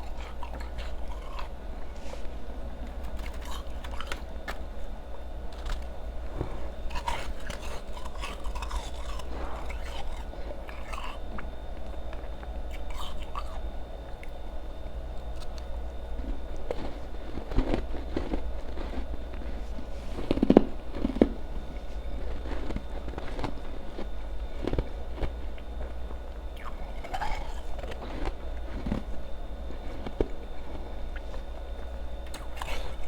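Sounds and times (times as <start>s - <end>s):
ice being chewed: 0.0s - 33.0s
steady low hum: 0.0s - 33.0s.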